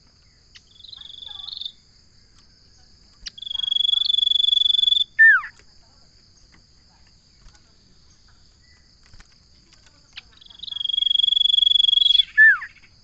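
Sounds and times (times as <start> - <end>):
faint high insect buzz: 0.0 - 13.0
bird whistling call: 3.3 - 5.5, 10.6 - 12.9.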